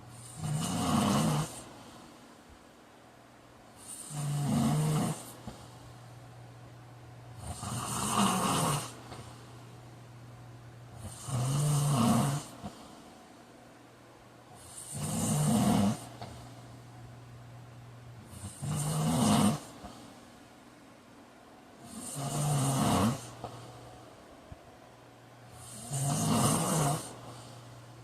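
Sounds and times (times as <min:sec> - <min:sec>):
man snoring: 0:00.2 - 0:01.7, 0:03.8 - 0:05.4, 0:07.4 - 0:09.1, 0:11.0 - 0:12.8, 0:14.6 - 0:16.2, 0:18.3 - 0:19.8, 0:21.8 - 0:23.4, 0:25.6 - 0:27.3.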